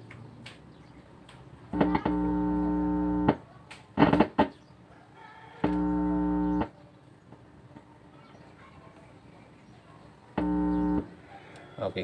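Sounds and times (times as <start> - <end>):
short noisy bursts: 1.7 - 3.4, 4.0 - 4.6, 5.6 - 6.7, 10.3 - 11.2
held musical tones: 10.4 - 11.1.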